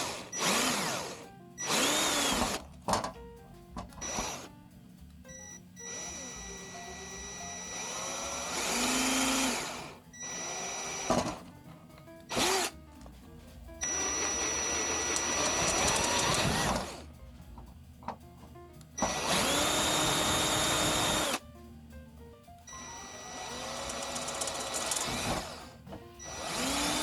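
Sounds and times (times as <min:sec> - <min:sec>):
power drill drilling metal: 0:00.0 - 0:03.1, 0:04.0 - 0:04.5, 0:05.8 - 0:11.5, 0:12.3 - 0:12.7, 0:13.8 - 0:17.0, 0:19.0 - 0:21.4, 0:22.7 - 0:27.0
background music: 0:00.0 - 0:27.0.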